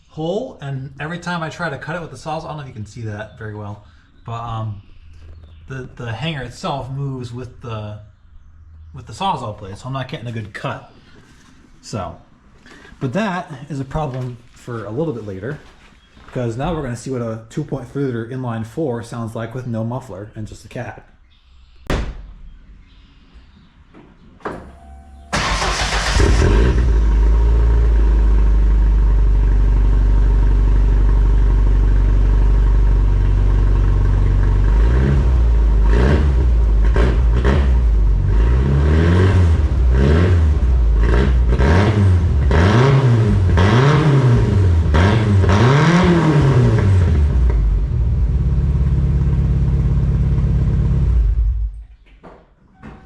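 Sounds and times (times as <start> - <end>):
engine starting: 24.5 - 27.2
engine revving in short blips: 24.5 - 28.4, 34.3 - 48.6
loud engine idling: 24.6 - 36.0.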